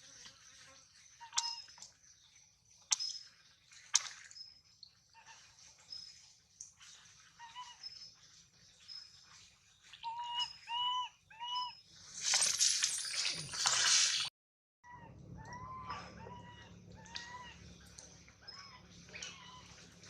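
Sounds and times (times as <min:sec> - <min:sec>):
baby monkey calling: 0:10.0 - 0:11.8, 0:14.9 - 0:17.7.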